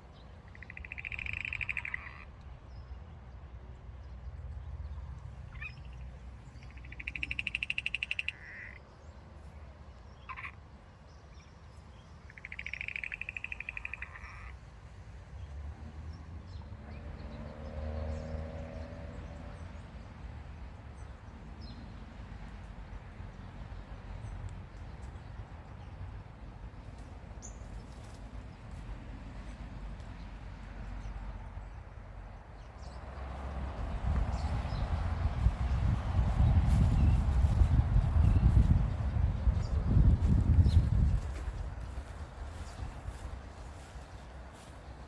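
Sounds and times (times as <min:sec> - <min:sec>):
frog rattling trill: 0:00.6 - 0:02.2, 0:06.8 - 0:08.7, 0:12.4 - 0:14.5
steady low rumble: 0:24.1 - 0:44.0.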